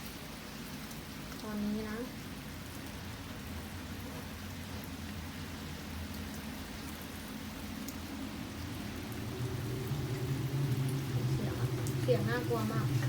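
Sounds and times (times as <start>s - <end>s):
faint rain ticks: 0.0s - 13.0s
wind rushing and roaring: 5.1s - 13.0s.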